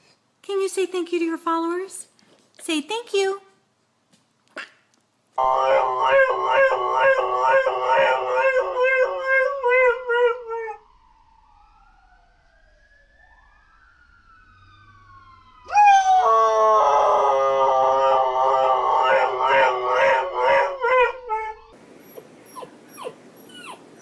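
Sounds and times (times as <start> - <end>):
dog howling: 5.4 - 10.8, 15.7 - 23.9
faint falling and rising tones: 5.4 - 15.7.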